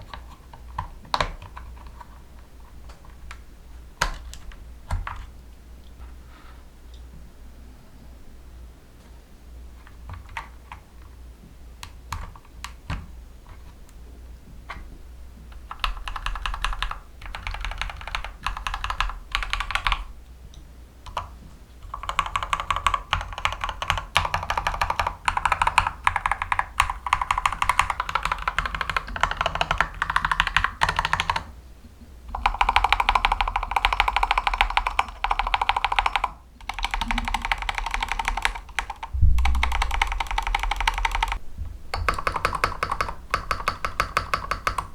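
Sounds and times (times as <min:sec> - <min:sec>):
mechanical keyboard typing: 0:15.6 - 0:20.1, 0:21.1 - 0:31.5, 0:32.3 - 0:44.9.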